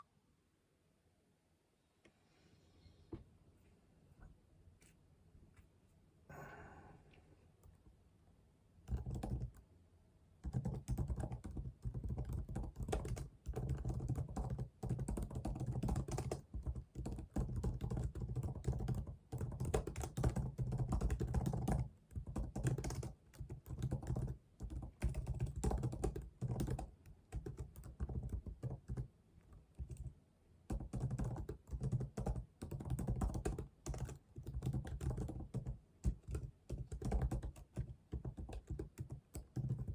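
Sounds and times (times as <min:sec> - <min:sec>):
typing on computer keyboard: 0:08.9 - 0:09.6, 0:10.4 - 0:39.9.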